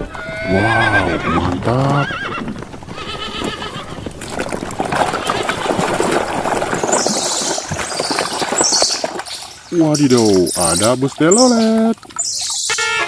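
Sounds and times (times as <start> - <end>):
horse whinny: 0.0 - 4.0
water splashing: 0.0 - 13.0
scrubbing: 3.0 - 13.0.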